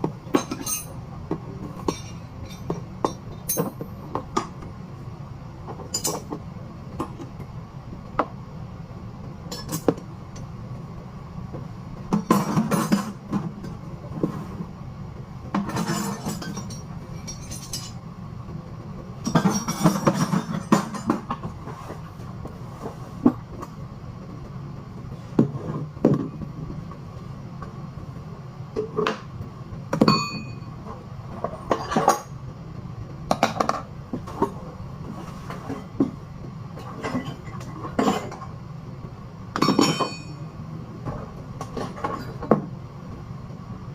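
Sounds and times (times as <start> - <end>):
low machinery hum: 0.0 - 43.9
metal tools clinking: 0.4 - 1.0, 1.9 - 3.9, 15.8 - 18.0.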